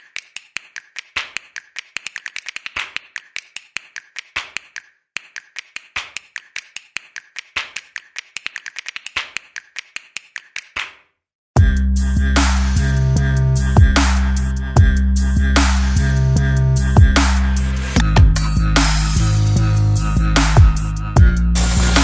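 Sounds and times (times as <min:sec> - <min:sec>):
looped percussive clicks and snaps: 0:00.0 - 0:11.0.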